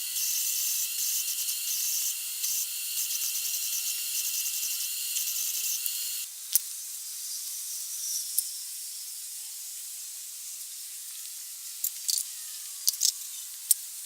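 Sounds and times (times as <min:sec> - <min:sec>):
welder arc crackling: 0:00.0 - 0:06.3
faint steady hiss: 0:00.0 - 0:14.0.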